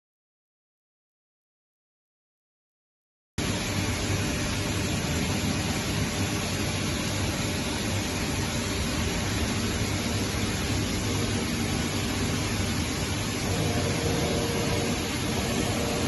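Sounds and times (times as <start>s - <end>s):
machinery hum: 3.4s - 16.0s.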